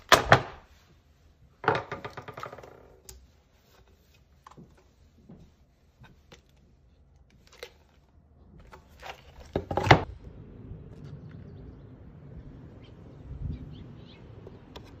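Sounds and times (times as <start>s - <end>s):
steady low rumble: 10.0s - 14.4s.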